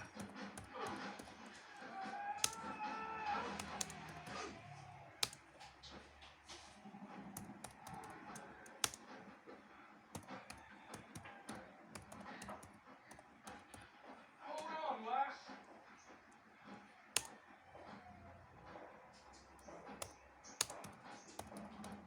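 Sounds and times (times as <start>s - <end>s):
typing on a keyboard: 0.0s - 5.7s, 7.2s - 9.2s, 10.1s - 13.9s, 19.4s - 22.0s.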